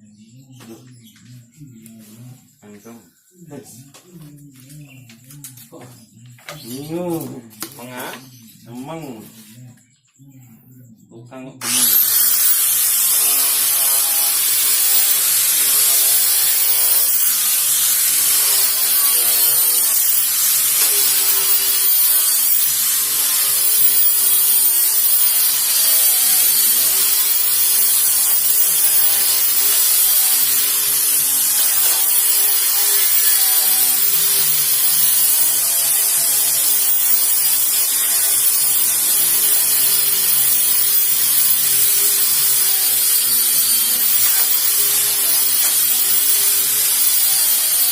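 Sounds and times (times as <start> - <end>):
power sander on wood: 11.6 - 47.9.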